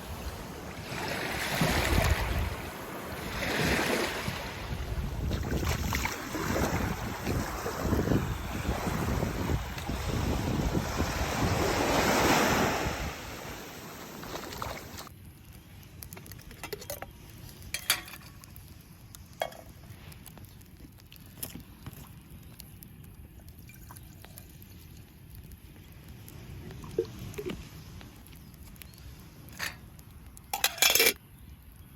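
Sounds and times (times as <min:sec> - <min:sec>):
sea waves washing ashore: 0:00.0 - 0:15.1
wind buffeting microphone: 0:00.0 - 0:15.1.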